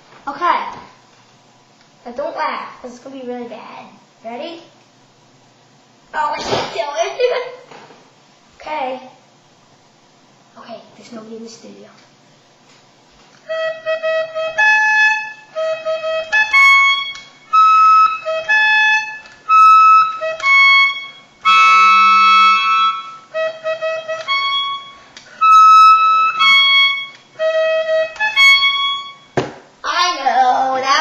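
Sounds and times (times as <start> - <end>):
horn played haltingly: 13.5 - 29.3.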